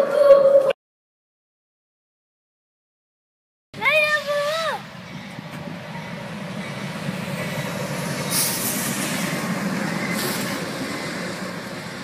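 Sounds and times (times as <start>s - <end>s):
train rumbling on tracks: 3.8s - 12.0s
brief hissing bursts: 8.3s - 9.2s.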